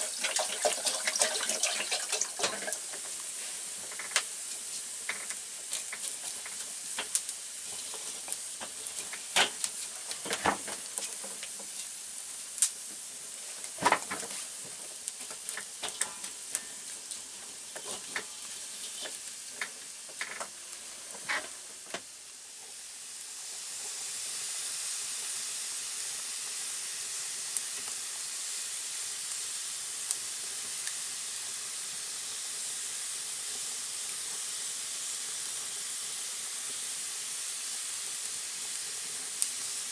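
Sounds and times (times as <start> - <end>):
wood fire crackling: 0.0 - 24.4, 25.9 - 39.9
steam hissing: 0.0 - 39.9
sharp pops and snaps: 12.6 - 12.8.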